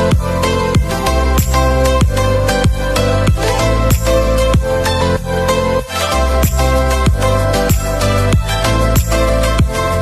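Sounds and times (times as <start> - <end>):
held synth chords: 0.0 - 10.0
steady kick drum: 0.1 - 4.7.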